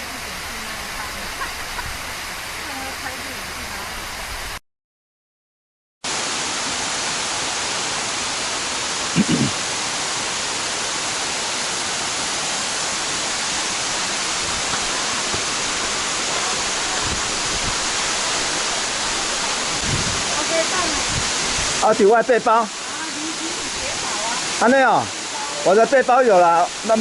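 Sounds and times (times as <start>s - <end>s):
waterfall roaring: 0.0s - 4.6s, 6.1s - 27.0s.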